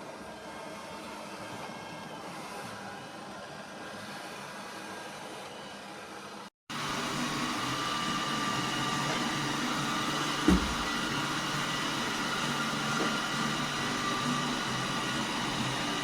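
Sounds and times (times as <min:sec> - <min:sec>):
robot vacuum motor whine: 0:06.7 - 0:16.0
short thump: 0:10.4 - 0:11.0.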